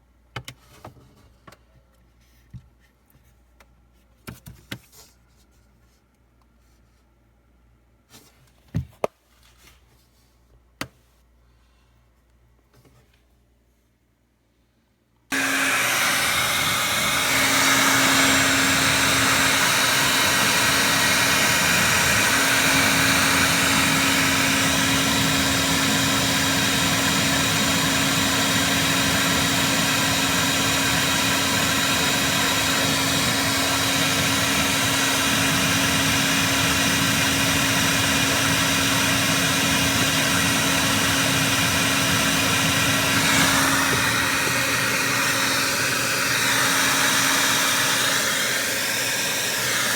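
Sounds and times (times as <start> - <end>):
electric blower motor: 15.3 - 49.9.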